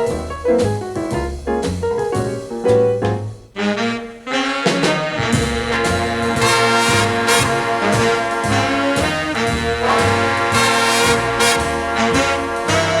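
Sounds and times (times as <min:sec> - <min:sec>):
steady walking beat: 0:00.0 - 0:03.6, 0:04.7 - 0:13.0
brass horns music: 0:03.6 - 0:13.0.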